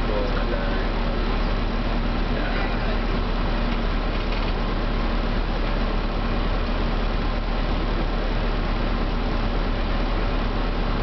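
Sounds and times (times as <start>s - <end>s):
large engine rumbling: 0.0s - 11.0s.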